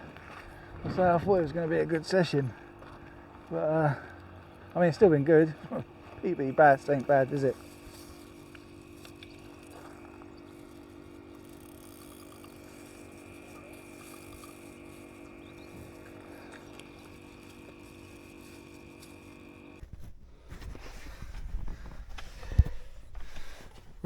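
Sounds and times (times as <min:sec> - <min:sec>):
faint steady hum: 0:00.0 - 0:24.0
constant high tone: 0:03.4 - 0:19.8.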